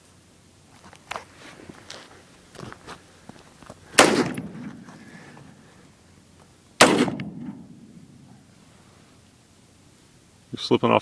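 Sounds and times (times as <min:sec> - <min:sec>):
pistol gunshots: 0:04.0 - 0:04.8, 0:06.8 - 0:08.3.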